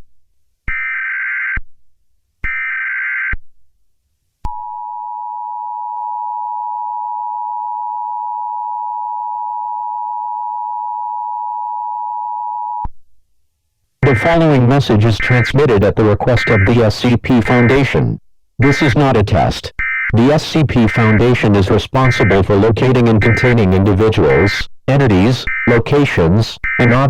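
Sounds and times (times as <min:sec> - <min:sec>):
high digital data tones: 0:14.0 - 0:18.0, 0:19.8 - 0:27.0
two-tone attention signal: 0:16.3 - 0:16.8, 0:26.7 - 0:27.0.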